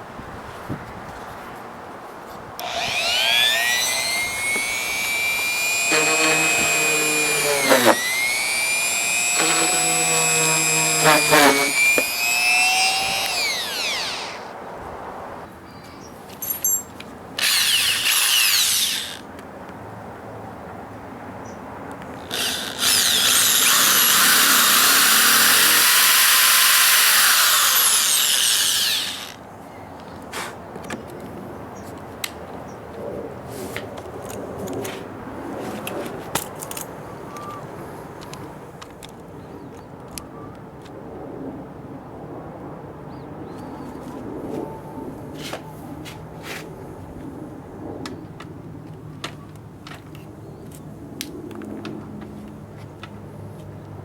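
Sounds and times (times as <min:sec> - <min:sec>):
power tool motor whining: 0:02.6 - 0:14.6, 0:17.4 - 0:19.3, 0:22.2 - 0:29.4.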